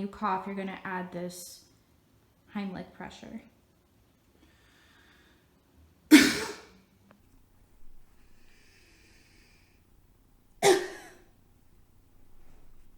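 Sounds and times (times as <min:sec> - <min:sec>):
faint breath in: 0:04.4 - 0:05.6, 0:08.2 - 0:09.9
person coughing forcefully: 0:06.1 - 0:06.7, 0:10.6 - 0:11.2.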